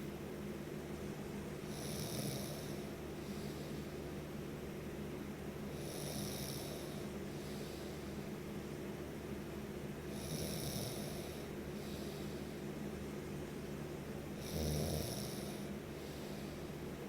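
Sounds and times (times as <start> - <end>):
steady low hum: 0.0 - 17.0
person snoring: 14.4 - 15.6.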